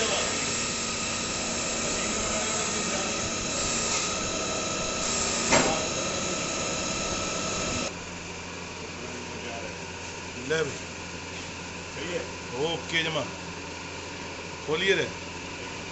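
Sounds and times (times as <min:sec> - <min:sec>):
lathe whining: 0:00.0 - 0:08.0
hiss: 0:05.0 - 0:07.9.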